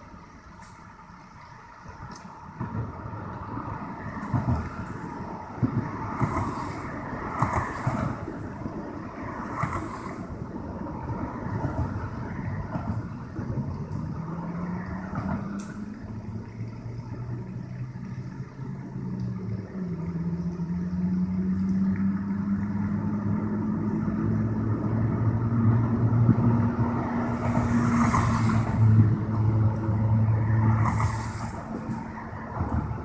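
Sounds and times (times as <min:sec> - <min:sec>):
vehicle engine droning: 0:00.0 - 0:33.0
brief hisses: 0:30.8 - 0:31.7.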